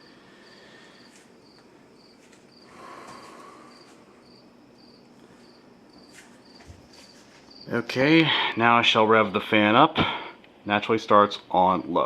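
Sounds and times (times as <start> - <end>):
cricket chirping: 0.0 - 8.6.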